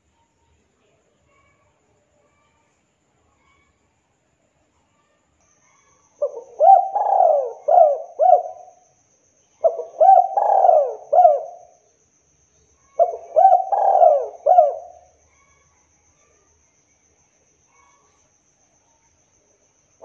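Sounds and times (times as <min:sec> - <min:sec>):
dove cooing: 0:06.2 - 0:08.8, 0:09.6 - 0:11.7, 0:13.0 - 0:15.1.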